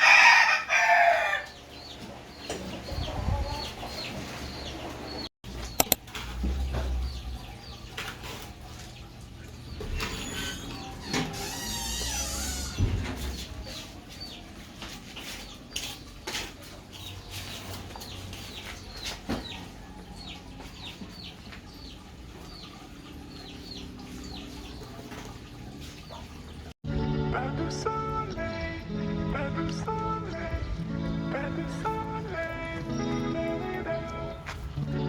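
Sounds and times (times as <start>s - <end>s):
chicks peeping: 0.0s - 26.6s.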